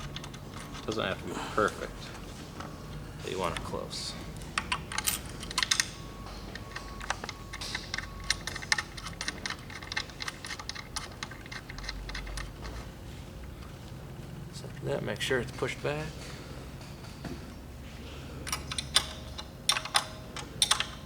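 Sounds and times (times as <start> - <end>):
metal parts clicking and tapping: 0.0 - 1.2, 3.4 - 12.9, 18.4 - 21.0
steady low hum: 0.0 - 21.0.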